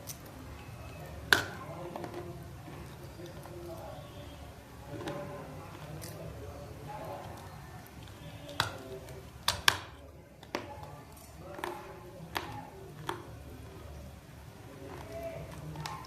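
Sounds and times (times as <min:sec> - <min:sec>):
clay chunks crunched by chewing: 0:04.9 - 0:13.9, 0:14.6 - 0:16.0.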